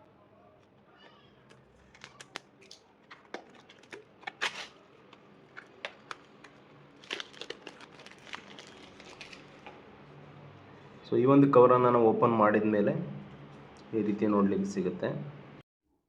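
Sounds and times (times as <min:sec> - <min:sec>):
packaging crinkling and rustling: 0:01.5 - 0:09.8
tearing rustle: 0:01.8 - 0:04.8, 0:07.0 - 0:09.7.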